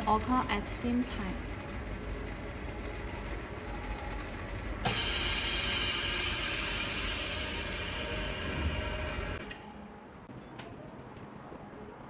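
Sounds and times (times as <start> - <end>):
low machine hum: 0.0 - 10.2
loud hissing air: 4.8 - 9.7.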